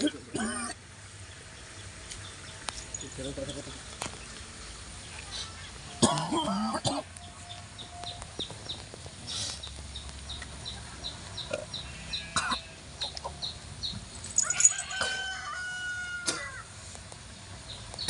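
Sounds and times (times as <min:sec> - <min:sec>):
rooster crowing: 0:14.4 - 0:16.7.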